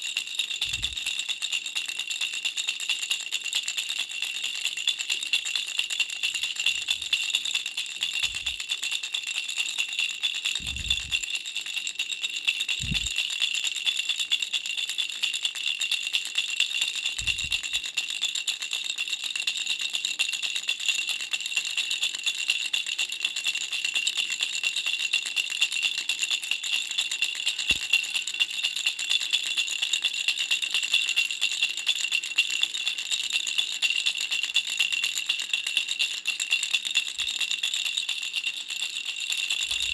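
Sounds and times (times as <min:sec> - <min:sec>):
baby rattle shaken: 0:00.0 - 0:19.7, 0:25.0 - 0:39.9
soft low thumps: 0:10.6 - 0:11.2, 0:12.8 - 0:13.2, 0:17.2 - 0:17.7.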